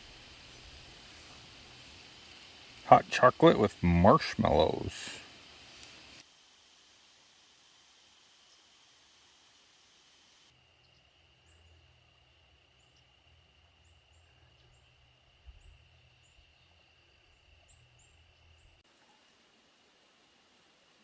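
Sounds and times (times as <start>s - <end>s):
faint chirps: 10.6s - 19.3s.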